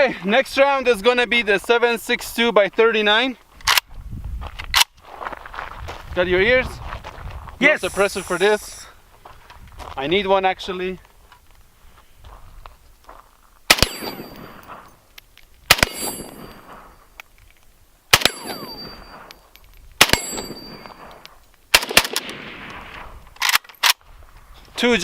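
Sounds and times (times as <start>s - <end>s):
rifle shots: 13.7s - 14.8s, 15.7s - 16.9s, 18.1s - 19.3s, 20.0s - 24.0s
steel plate ringing: 13.8s - 14.7s, 15.8s - 17.0s, 18.2s - 19.3s, 20.1s - 21.0s.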